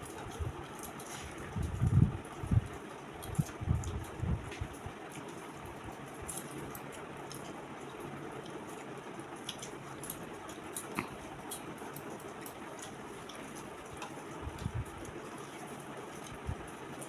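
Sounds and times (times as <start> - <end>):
small wet clicks and smacks: 0.0 - 17.0
people eating by hand: 6.0 - 17.0.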